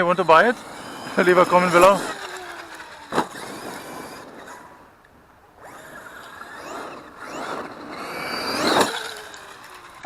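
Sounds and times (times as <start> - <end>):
rc truck electric motor whining: 0.0 - 10.0.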